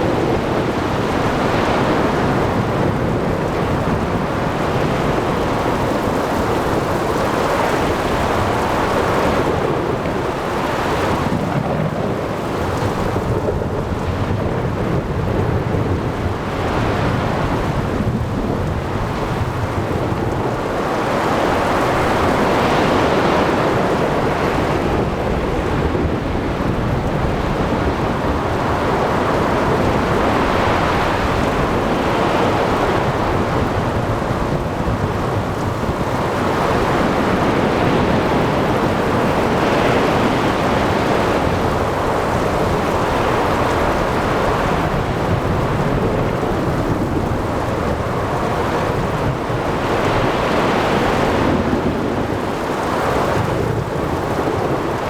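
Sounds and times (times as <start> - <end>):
rain: 0.0 - 55.0
waves breaking: 0.0 - 55.0
wind: 0.0 - 55.0.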